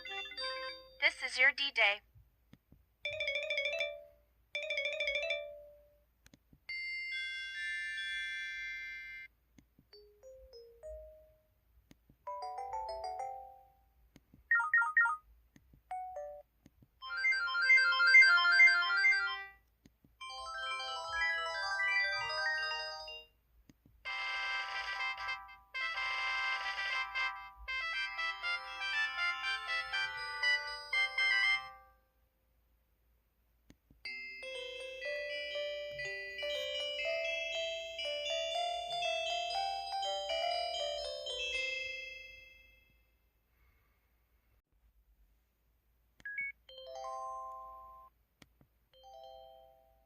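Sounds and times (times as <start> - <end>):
bell-like phone alert melodies: 0.0 - 1.9, 3.1 - 5.9, 14.5 - 15.2, 15.9 - 16.4, 17.0 - 19.6, 20.2 - 23.3, 27.4 - 32.0, 34.1 - 42.6, 46.3 - 48.1
phone alert melodies: 14.5 - 15.2.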